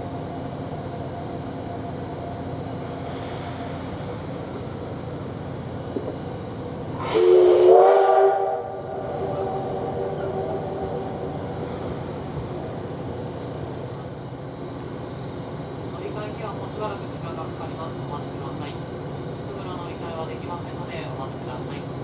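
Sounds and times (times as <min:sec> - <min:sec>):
moving train: 0:00.0 - 0:22.0
rush of steam: 0:02.9 - 0:05.5, 0:06.9 - 0:13.1
steam whistle: 0:07.0 - 0:12.1.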